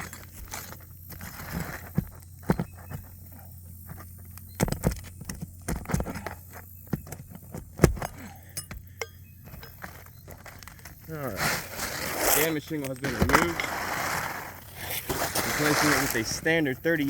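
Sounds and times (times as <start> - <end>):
metal tool knocking on shingles: 6.8 - 10.4.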